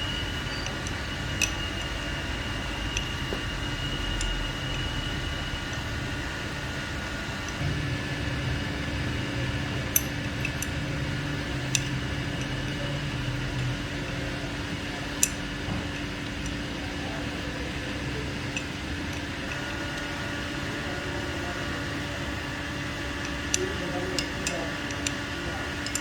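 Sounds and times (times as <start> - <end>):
steady mechanical hum: 0.0 - 26.0.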